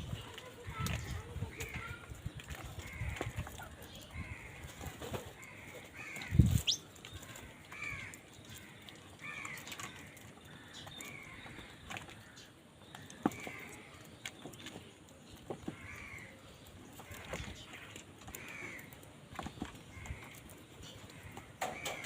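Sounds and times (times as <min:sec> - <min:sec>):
crows cawing: 0:02.8 - 0:12.5, 0:15.7 - 0:16.4, 0:17.0 - 0:19.0, 0:19.9 - 0:20.5, 0:21.1 - 0:22.0.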